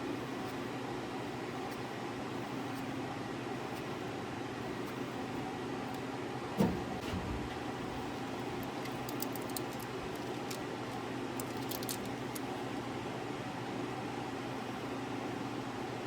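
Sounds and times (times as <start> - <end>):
steady fan-like hum: 0.0 - 16.0
light clicking and clinking: 8.5 - 10.6.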